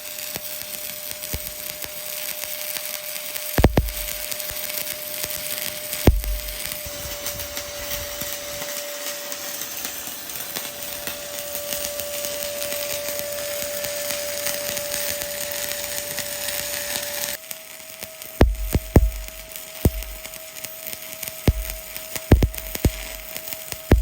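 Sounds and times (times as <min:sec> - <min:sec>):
welding arc crackling: 0:00.0 - 0:24.0
steady hum: 0:03.6 - 0:04.4, 0:06.1 - 0:08.6, 0:18.4 - 0:20.4, 0:21.5 - 0:24.0.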